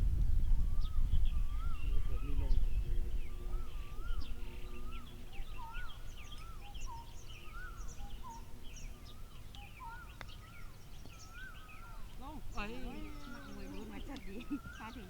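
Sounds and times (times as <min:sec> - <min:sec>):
low rumble: 0:00.0 - 0:04.2
birds chirping: 0:00.0 - 0:15.0.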